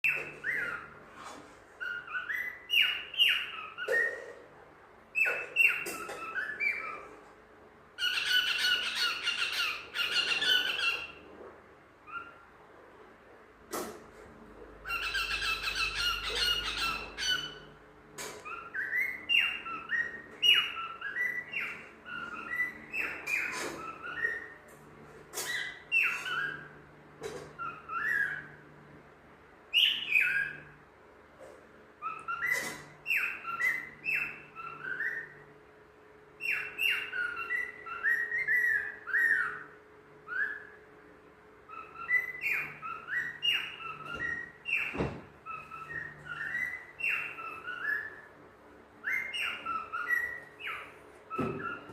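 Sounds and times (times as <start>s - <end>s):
cockatiel whistling: 36.4s - 40.8s.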